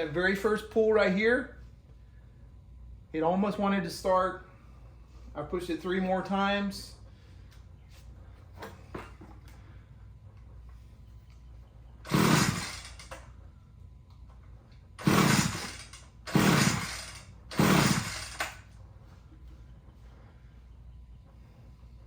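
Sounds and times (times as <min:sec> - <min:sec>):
trimmer recoil starter pulled: 0:12.1 - 0:13.3, 0:15.0 - 0:18.7.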